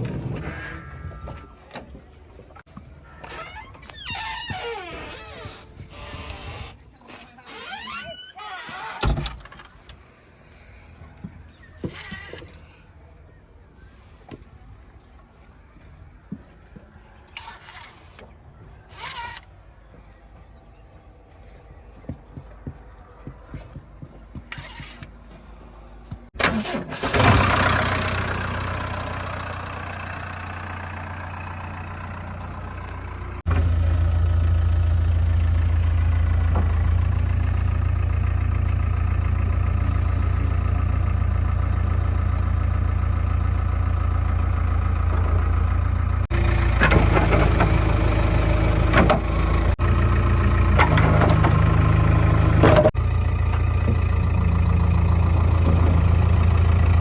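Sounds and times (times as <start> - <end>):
diesel engine idling: 26.4 - 57.0.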